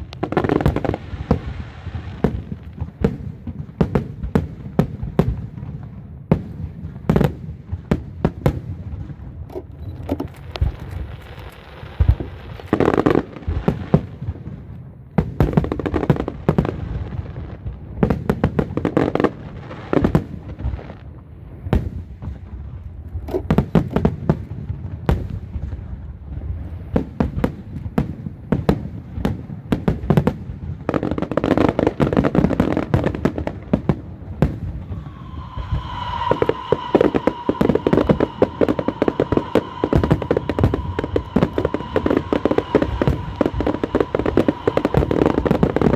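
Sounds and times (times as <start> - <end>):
sharp bangs and crackles: 0.0 - 16.8, 27.0 - 45.9
steady high tone: 34.7 - 45.9.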